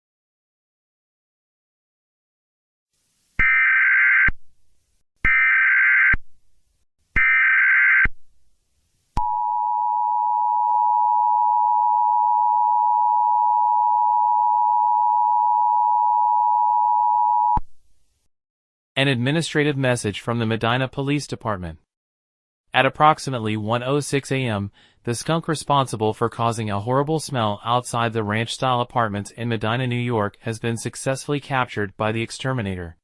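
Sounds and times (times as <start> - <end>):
shrill dual tone: 9.2 - 17.6.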